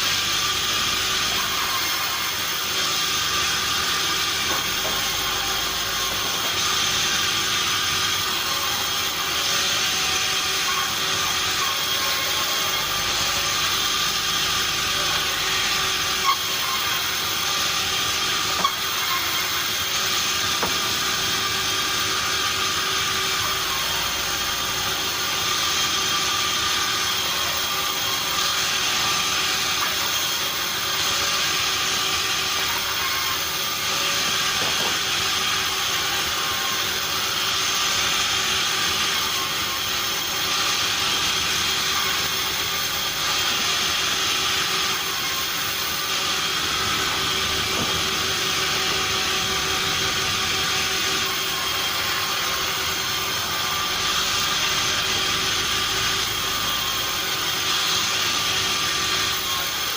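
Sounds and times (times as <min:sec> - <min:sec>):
sawmill machinery whining: 0:00.0 - 0:59.9
sharp knocks: 0:20.5 - 0:21.1, 0:47.7 - 0:48.2.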